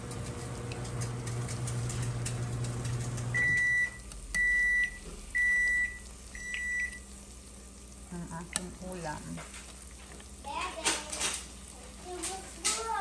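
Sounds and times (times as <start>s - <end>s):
microwave oven hum: 0.0s - 13.0s
microwave beeps: 3.3s - 7.2s.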